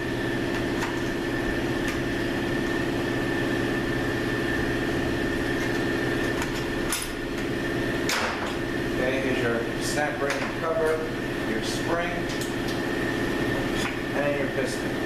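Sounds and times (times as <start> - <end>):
steady machine hum: 0.0 - 15.0.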